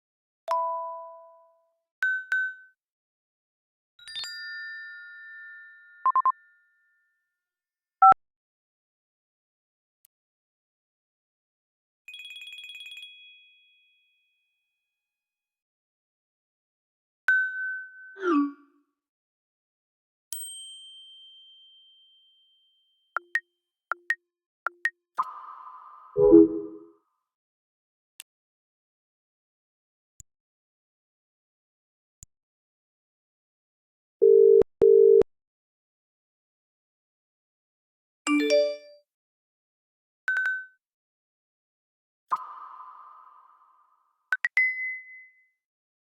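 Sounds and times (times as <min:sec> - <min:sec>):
chord-like alert: 0:26.2 - 0:26.8
quick double beep: 0:26.2 - 0:26.8
two-note blips: 0:26.2 - 0:26.8.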